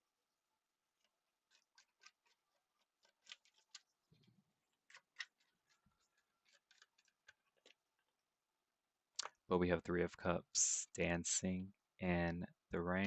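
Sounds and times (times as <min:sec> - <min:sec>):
cards clicking and snapping: 0:04.8 - 0:05.5.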